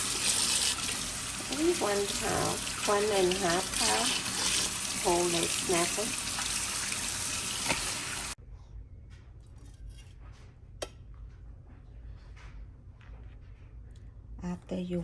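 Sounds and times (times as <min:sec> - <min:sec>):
tap water running in sink: 0:00.0 - 0:08.4.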